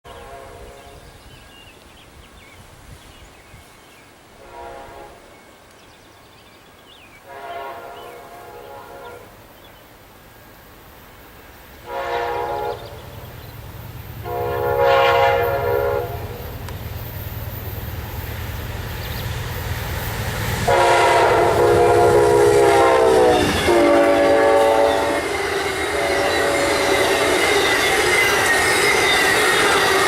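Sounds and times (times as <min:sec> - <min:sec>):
train air horn blasts: 0:00.1 - 0:01.1, 0:04.4 - 0:05.3, 0:07.2 - 0:09.4, 0:11.8 - 0:13.2, 0:14.2 - 0:16.6, 0:20.4 - 0:30.0
low train rumble: 0:00.1 - 0:03.4, 0:06.7 - 0:30.0.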